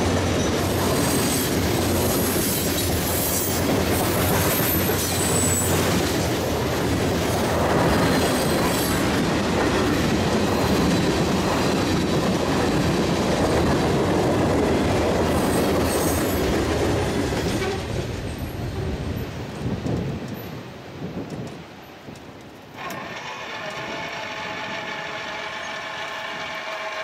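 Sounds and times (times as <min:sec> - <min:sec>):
train wheels clattering on rails: 0:00.0 - 0:27.0
high wheel squeal: 0:02.2 - 0:05.9, 0:22.8 - 0:27.0.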